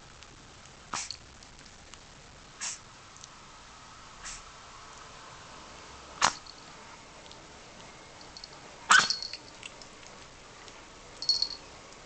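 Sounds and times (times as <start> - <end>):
small dog sneezing: 0.9 - 1.2, 2.6 - 2.8, 4.2 - 4.5, 6.2 - 6.4, 8.9 - 9.2.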